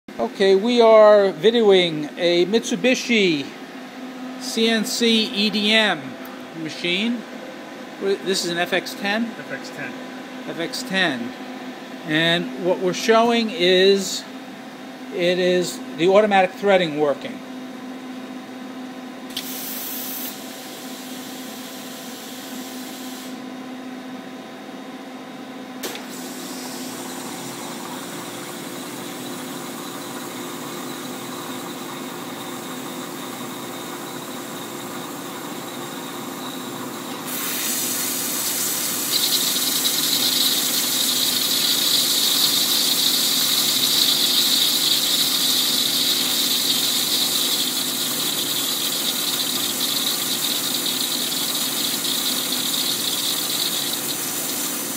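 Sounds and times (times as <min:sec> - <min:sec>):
steady machine hum: 0:00.1 - 0:54.9
water jets spraying: 0:37.3 - 0:54.9.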